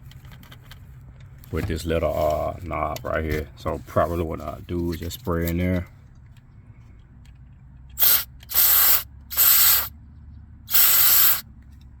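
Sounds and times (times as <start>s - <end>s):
aerosol can spraying: 8.0s - 9.9s, 10.7s - 11.4s.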